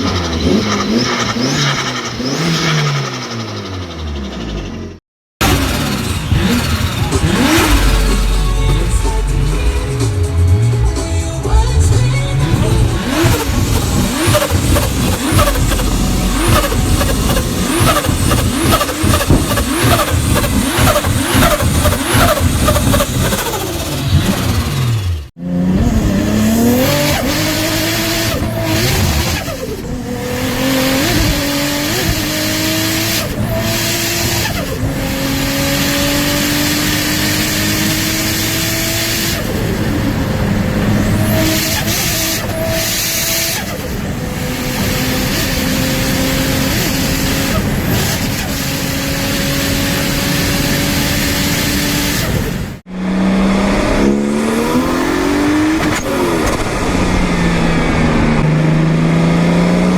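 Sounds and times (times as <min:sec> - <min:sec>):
car engine revving: 0:00.0 - 0:59.9
turbocharged car engine accelerating: 0:00.0 - 0:59.9.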